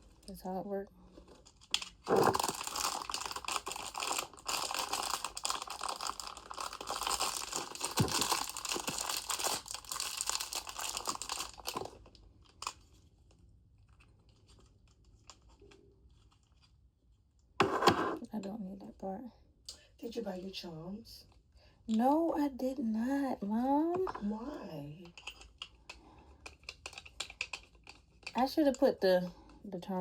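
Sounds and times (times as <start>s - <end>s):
packaging tearing and rustling: 1.4s - 12.9s.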